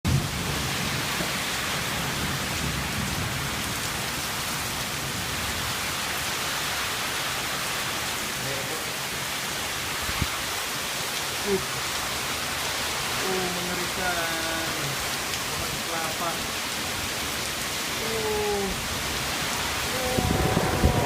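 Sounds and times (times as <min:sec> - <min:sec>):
heavy rain: 0:00.0 - 0:21.0
strong wind: 0:09.6 - 0:10.6, 0:17.9 - 0:21.0
low rumbling: 0:19.9 - 0:21.0.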